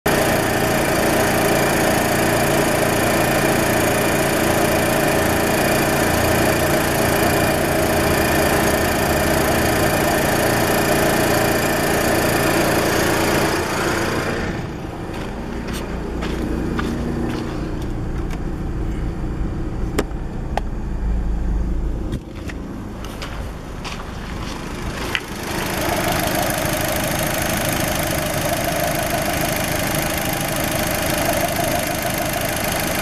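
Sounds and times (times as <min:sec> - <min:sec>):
car engine running: 0:00.1 - 0:33.0
pulley whistle: 0:25.8 - 0:33.0.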